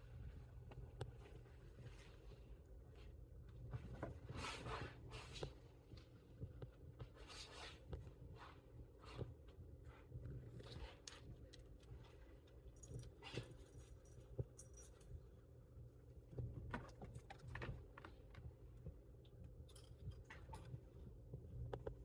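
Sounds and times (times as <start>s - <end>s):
low room hum: 0.0s - 22.0s
kittens scuffling and clicking: 3.4s - 22.0s.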